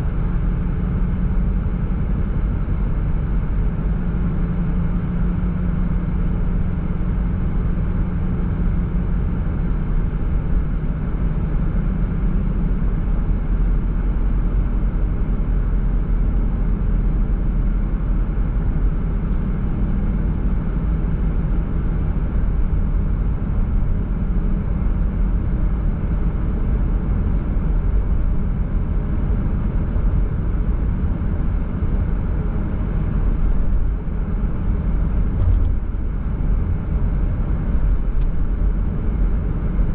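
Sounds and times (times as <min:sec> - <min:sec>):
car engine drone: 0:00.0 - 0:39.9
tyre road noise: 0:19.2 - 0:39.9.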